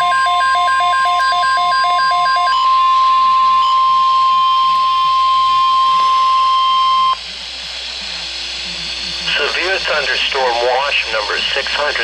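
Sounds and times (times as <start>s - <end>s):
fast alternating beeps: 0.0s - 7.2s
steady warning alarm tone: 0.0s - 12.0s.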